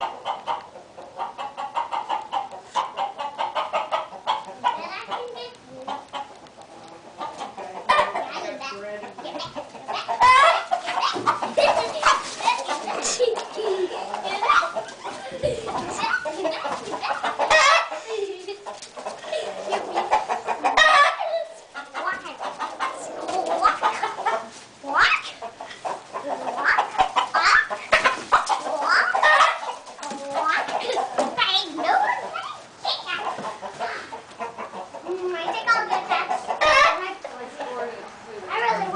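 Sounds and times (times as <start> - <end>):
hens clucking: 0.0 - 38.9
chicken squawks: 9.3 - 18.1, 18.7 - 37.1.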